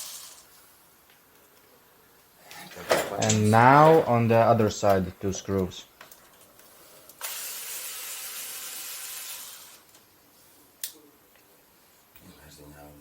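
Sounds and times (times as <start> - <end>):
electric screwdriver running: 7.2 - 9.9.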